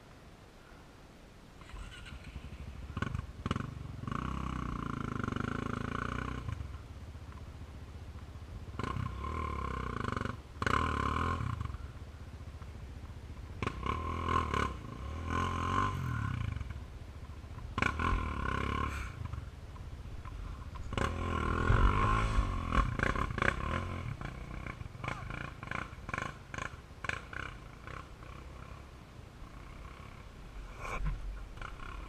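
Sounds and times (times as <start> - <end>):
quad engine revving: 1.6 - 6.8, 8.7 - 11.9, 13.5 - 16.8, 17.7 - 19.5, 20.2 - 32.0.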